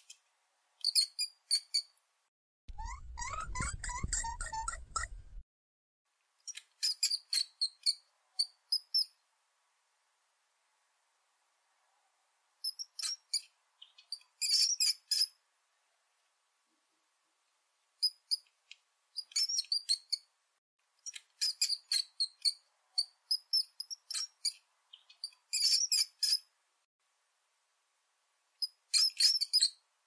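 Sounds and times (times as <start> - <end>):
mouse squeaking: 0.8 - 2.0, 2.7 - 5.4, 6.5 - 9.2, 12.6 - 15.4, 18.0 - 20.3, 21.0 - 26.5, 28.6 - 29.8.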